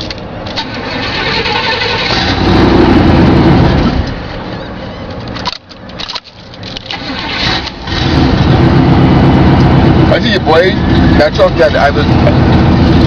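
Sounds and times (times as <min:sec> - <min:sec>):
engine idling unevenly with misfire: 0:00.0 - 0:02.4.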